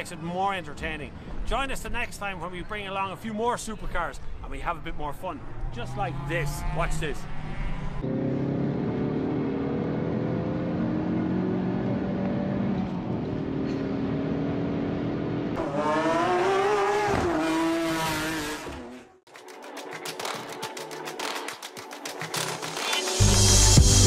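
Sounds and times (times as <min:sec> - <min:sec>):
race car accelerating: 0:05.4 - 0:19.1
race car revving hard: 0:05.5 - 0:19.0.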